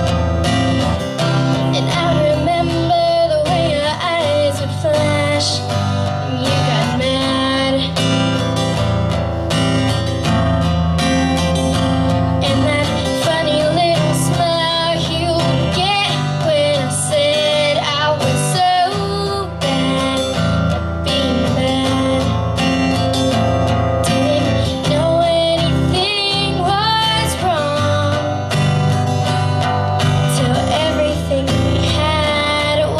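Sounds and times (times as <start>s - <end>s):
strummed guitar: 0.0s - 32.9s
woman singing: 1.5s - 8.5s, 12.3s - 28.8s, 30.0s - 32.9s.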